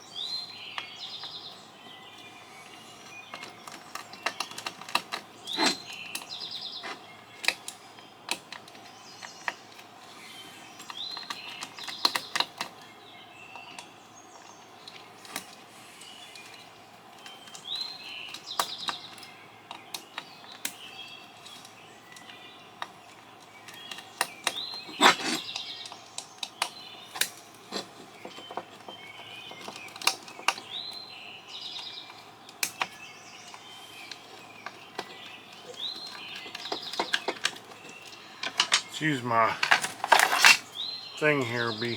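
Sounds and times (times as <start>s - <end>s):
hand tools clicking on metal parts: 3.3s - 9.8s, 21.4s - 28.8s, 31.8s - 40.7s.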